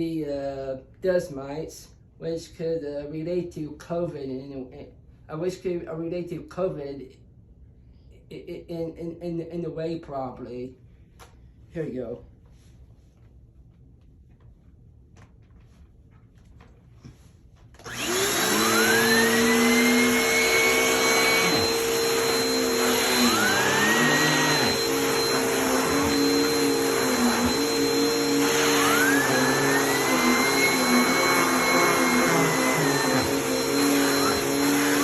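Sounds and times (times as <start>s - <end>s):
vacuum cleaner running: 17.8s - 35.0s.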